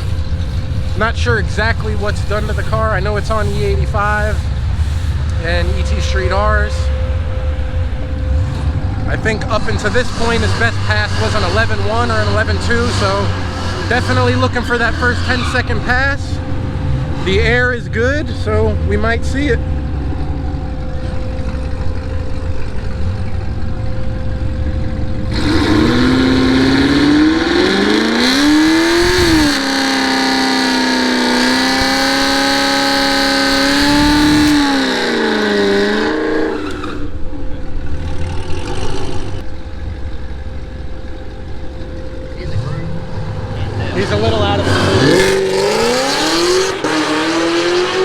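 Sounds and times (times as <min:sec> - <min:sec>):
car engine at full throttle: 0:00.0 - 0:48.0.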